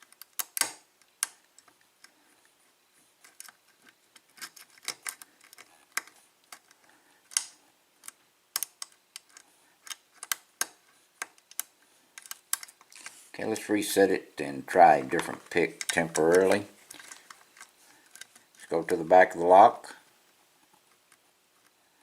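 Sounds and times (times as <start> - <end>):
lock pick clicking in a lock: 4.4 - 12.7.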